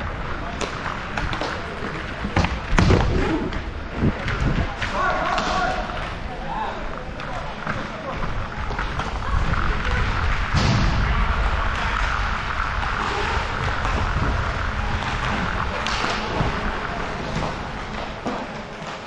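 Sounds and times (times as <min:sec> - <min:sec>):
skate blades scraping ice: 0:00.1 - 0:10.6, 0:11.4 - 0:19.0
steady low rumble: 0:05.8 - 0:18.3.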